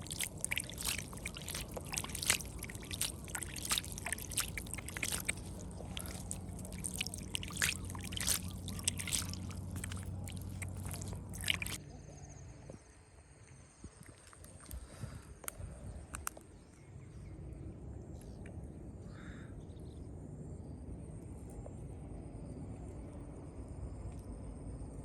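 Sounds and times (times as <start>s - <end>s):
water splashing and trickling: 0.0s - 11.8s
steady low hum: 0.0s - 13.1s.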